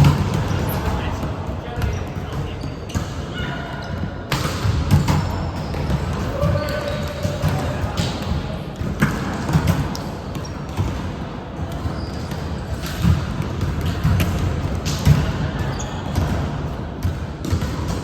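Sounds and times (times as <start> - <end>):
gym hall background noise: 0.0 - 18.0
shoe squeaks: 1.9 - 4.2, 4.9 - 7.2, 11.8 - 12.8.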